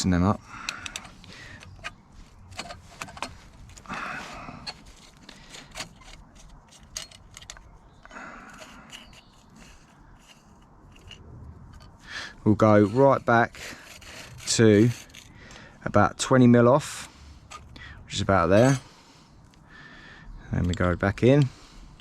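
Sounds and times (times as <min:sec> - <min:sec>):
metal parts scraping sliding: 0:00.6 - 0:15.4, 0:17.0 - 0:17.8, 0:18.5 - 0:18.9.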